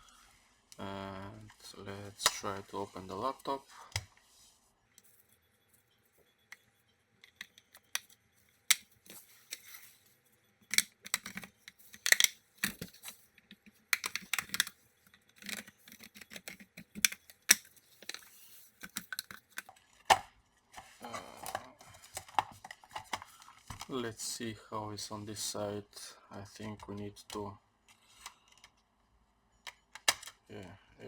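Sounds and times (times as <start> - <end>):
plastic clips clicking and snapping: 7.3 - 9.2, 10.7 - 20.3, 29.7 - 30.5
plastic scraping: 10.6 - 20.2.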